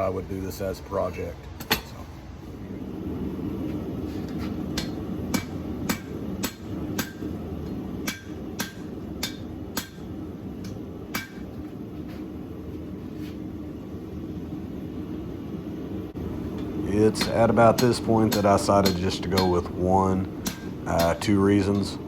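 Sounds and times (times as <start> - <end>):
hammer striking hot steel: 4.4 - 11.6, 16.5 - 22.0.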